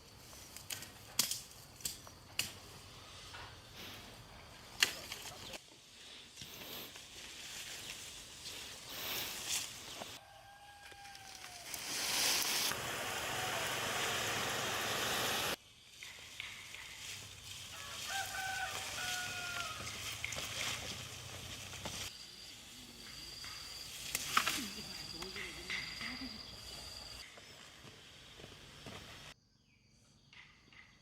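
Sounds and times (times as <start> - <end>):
outdoor background noise: 0.0 - 31.0
rooster crowing: 10.2 - 12.0, 17.7 - 20.2.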